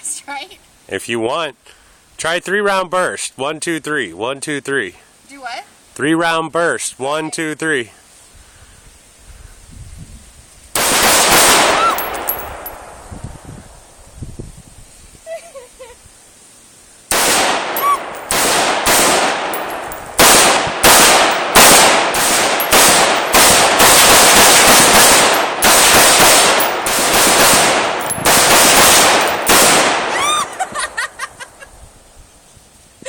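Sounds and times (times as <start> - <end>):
rifle shots: 10.8 - 12.9, 17.1 - 30.2.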